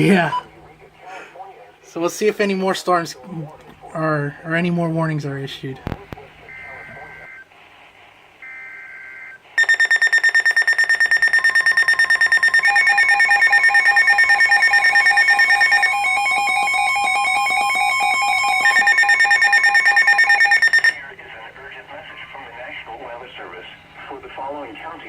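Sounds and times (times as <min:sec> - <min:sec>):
attention tone: 0:05.6 - 0:07.4, 0:08.4 - 0:21.1
weather radio alarm beeping: 0:05.8 - 0:07.5, 0:08.4 - 0:21.2
second beeping tone: 0:08.4 - 0:16.2, 0:17.5 - 0:21.0.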